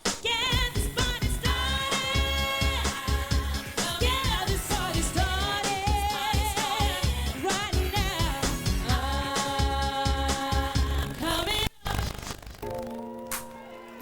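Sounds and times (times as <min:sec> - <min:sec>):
bass drum beat: 0:00.0 - 0:11.2
pop band music: 0:00.0 - 0:11.6.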